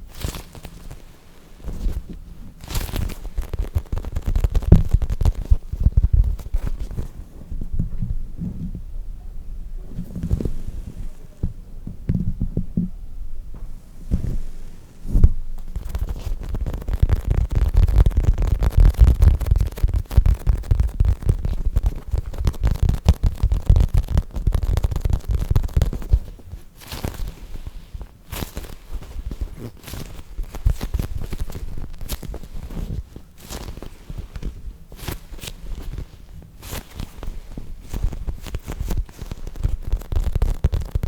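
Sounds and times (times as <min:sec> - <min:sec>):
foam toy crackly handling: 0:00.0 - 0:07.4, 0:14.1 - 0:41.0.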